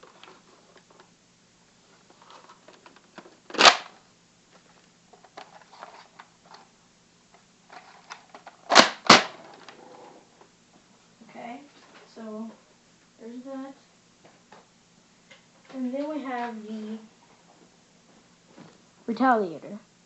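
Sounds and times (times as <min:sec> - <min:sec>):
plastic toy blaster clicks and rattles: 0:03.5 - 0:03.9.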